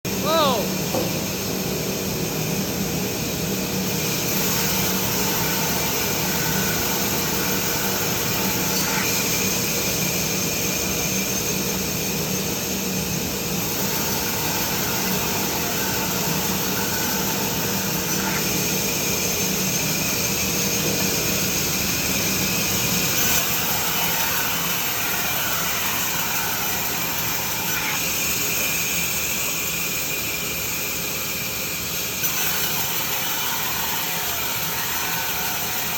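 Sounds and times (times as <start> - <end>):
band saw machine hum with hiss: 0.1 - 35.9.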